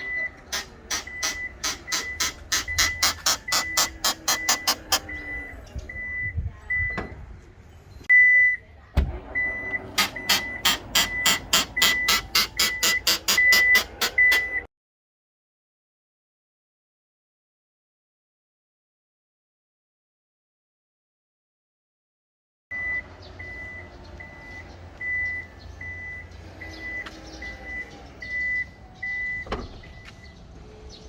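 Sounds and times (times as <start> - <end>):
warning buzzer beeping: 0.0 - 6.9, 9.4 - 14.7, 22.8 - 30.2.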